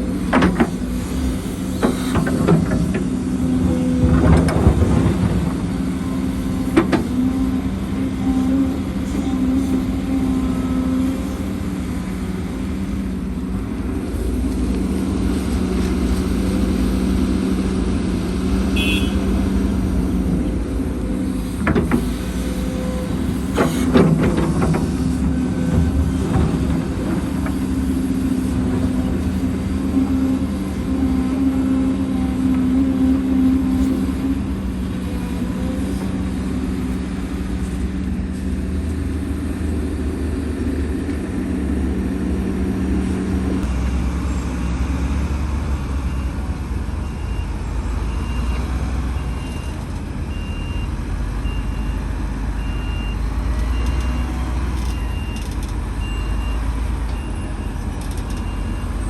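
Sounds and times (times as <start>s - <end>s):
diesel construction machinery running: 0.0s - 59.0s
truck reversing alarm beeping: 45.8s - 59.0s.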